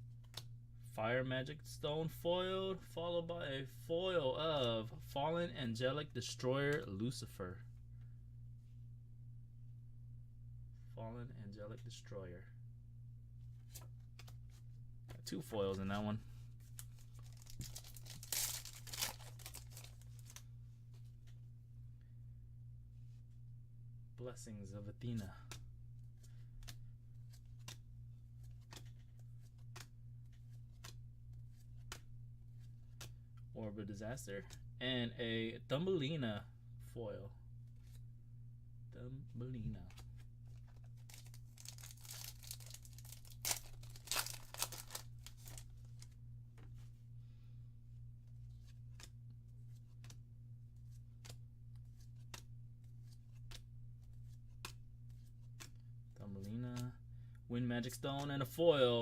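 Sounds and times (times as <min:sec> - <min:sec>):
low hum: 0:00.0 - 0:15.5
steady low hum: 0:00.0 - 0:59.0
cards flipping: 0:00.2 - 0:00.5, 0:13.6 - 0:14.7, 0:16.6 - 0:20.4, 0:25.1 - 0:33.5, 0:39.8 - 0:46.9, 0:48.3 - 0:50.2, 0:50.8 - 0:56.9.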